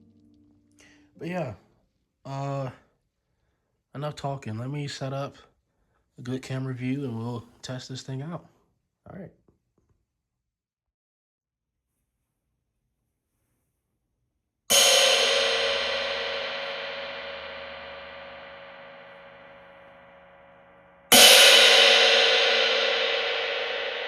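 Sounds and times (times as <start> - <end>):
crash cymbal ringing: 14.7 - 24.0.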